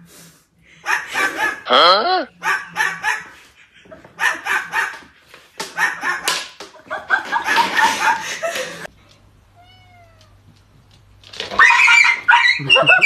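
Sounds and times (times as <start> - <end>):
small dog barking: 0.8 - 1.8, 2.4 - 3.3, 4.2 - 5.0, 5.8 - 6.4.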